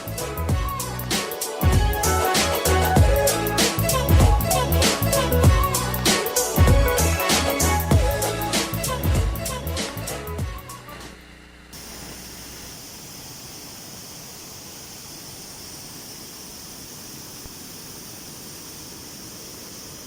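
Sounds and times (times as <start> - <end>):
music: 0.0 - 11.3.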